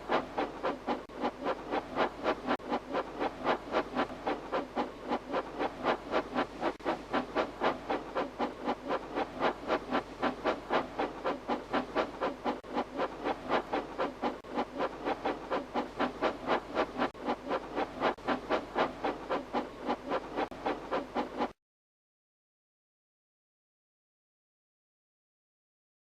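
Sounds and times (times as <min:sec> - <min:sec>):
steam engine chuffing: 0:00.0 - 0:21.5.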